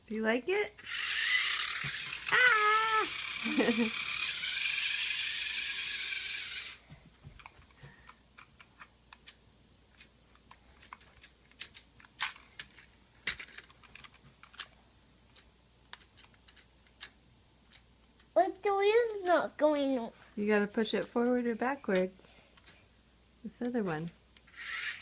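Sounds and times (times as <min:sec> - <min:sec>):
toy car electric motor whining: 0:00.8 - 0:06.8, 0:24.5 - 0:25.0
plastic toy clicks and taps: 0:07.4 - 0:14.7, 0:15.3 - 0:18.3.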